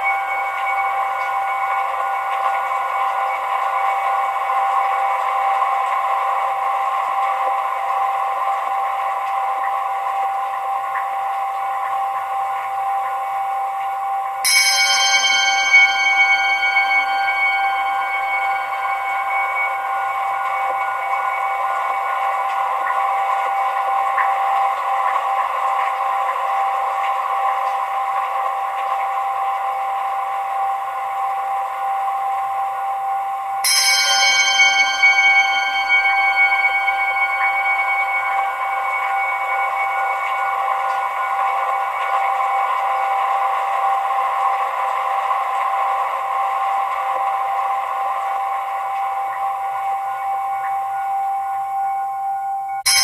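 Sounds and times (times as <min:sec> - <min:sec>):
hissing drone with held tone: 0:00.0 - 0:53.0
church bell strike: 0:14.4 - 0:22.5, 0:33.6 - 0:42.9.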